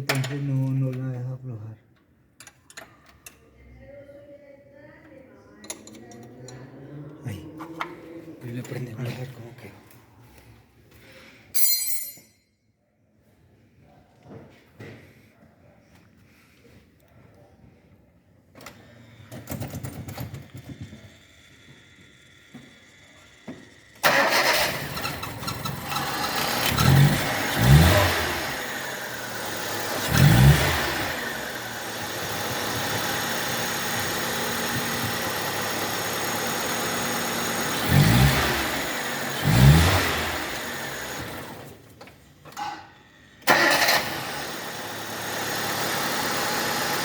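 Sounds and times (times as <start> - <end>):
car engine starting and idling: 18.6 - 47.0
engine throttle blips: 24.0 - 41.8.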